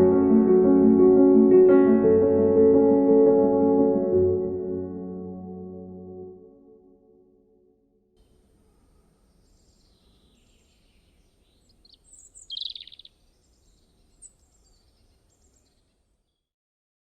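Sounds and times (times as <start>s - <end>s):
birds chirping: 8.2s - 16.4s.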